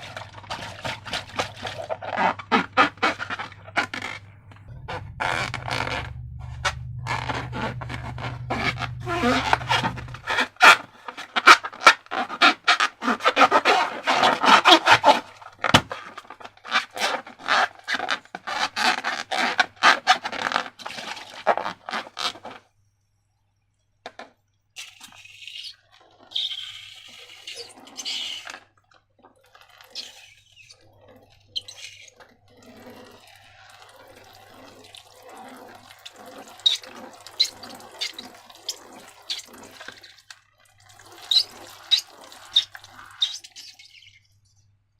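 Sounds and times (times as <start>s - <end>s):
slime squelching: 0.0s - 16.3s, 27.3s - 44.6s.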